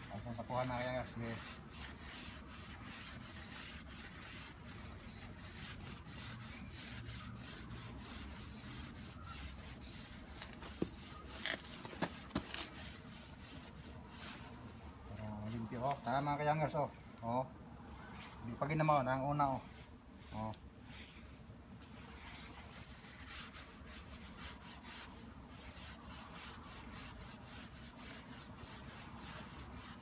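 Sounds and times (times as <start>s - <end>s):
rubbing a motorcycle chain: 0.0s - 14.5s, 22.1s - 30.0s.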